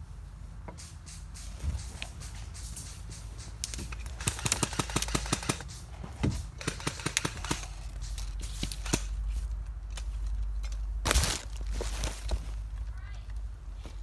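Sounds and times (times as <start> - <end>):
airsoft guns firing: 3.8 - 5.8, 6.5 - 9.2.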